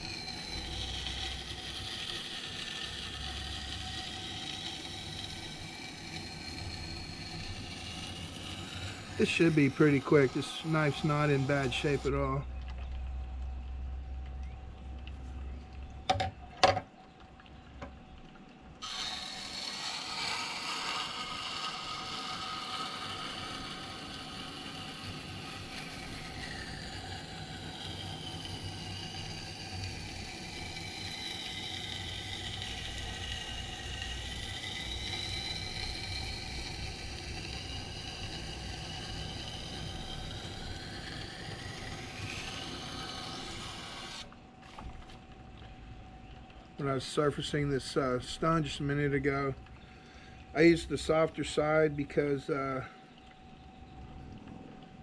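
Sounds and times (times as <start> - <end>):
knife grinding on sharpening stone: 0.1 - 12.1, 31.0 - 44.2.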